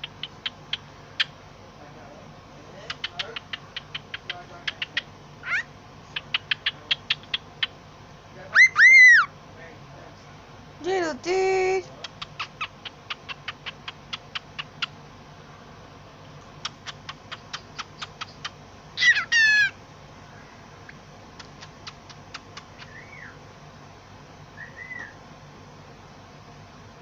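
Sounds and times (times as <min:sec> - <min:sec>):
parrot clicking: 0:00.0 - 0:01.3, 0:02.9 - 0:05.1, 0:06.2 - 0:07.7, 0:12.0 - 0:14.9, 0:16.6 - 0:18.6, 0:21.4 - 0:22.9
parrot calls: 0:02.9 - 0:07.8, 0:08.5 - 0:09.3, 0:12.0 - 0:15.0, 0:16.6 - 0:19.8
parrot whistles: 0:08.5 - 0:09.3, 0:17.3 - 0:19.8, 0:22.8 - 0:23.4, 0:24.6 - 0:25.2.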